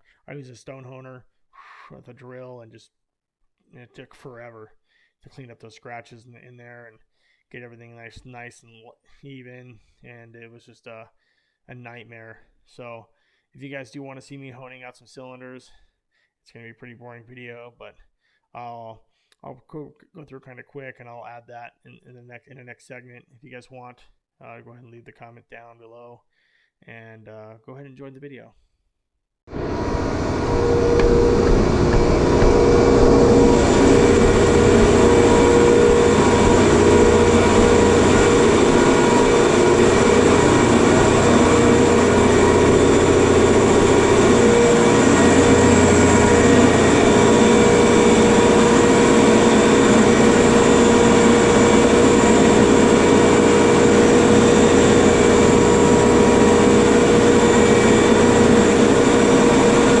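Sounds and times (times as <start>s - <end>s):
compressor machinery droning: 29.5s - 60.0s
steady whining tones: 29.5s - 60.0s.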